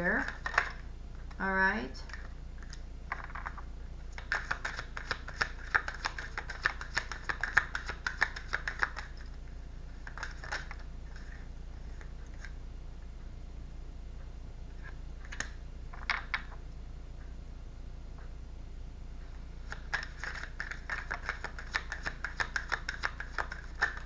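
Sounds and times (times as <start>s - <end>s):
steady low hum: 0.0s - 24.0s
cards being shuffled: 3.1s - 3.6s, 4.2s - 9.3s, 10.0s - 11.4s, 19.6s - 24.0s.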